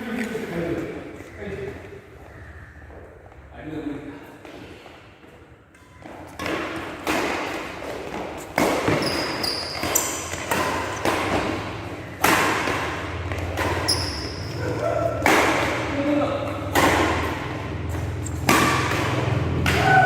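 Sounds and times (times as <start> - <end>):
badminton racket hitting shuttlecock: 5.7 - 20.0
shoe squeaks: 8.9 - 11.0, 13.8 - 15.0, 18.1 - 18.5.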